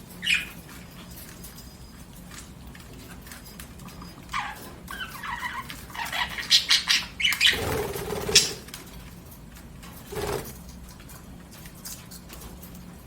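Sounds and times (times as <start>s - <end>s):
budgerigars chirping and chattering: 0.1s - 2.1s, 3.0s - 8.7s.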